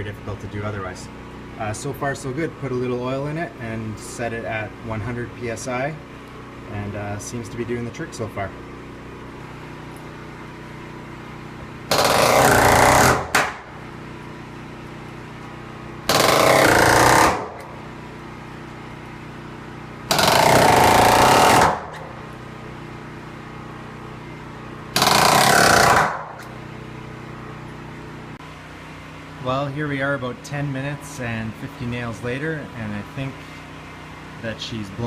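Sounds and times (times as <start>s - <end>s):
pneumatic nailer hammering: 9.4s - 23.3s, 24.8s - 27.0s.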